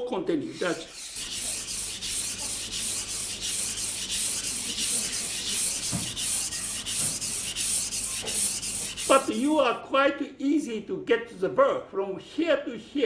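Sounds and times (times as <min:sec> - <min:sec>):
knife scraping on wet whetstone: 0:00.6 - 0:09.4.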